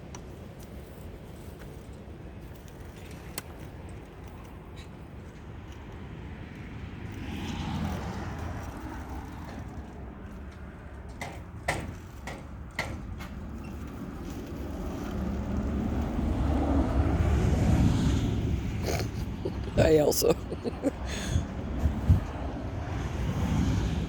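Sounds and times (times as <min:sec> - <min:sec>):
wind noise on microphone: 0:21.0 - 0:24.0.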